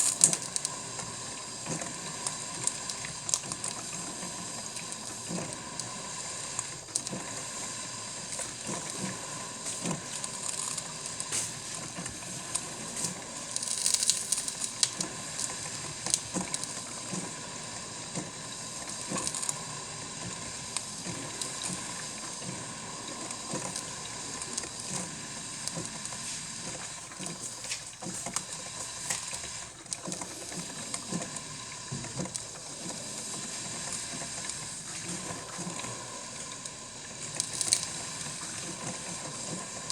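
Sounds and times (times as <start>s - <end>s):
coffee maker hissing and bubbling: 0.0s - 39.9s
crackles and sputters: 0.0s - 39.9s.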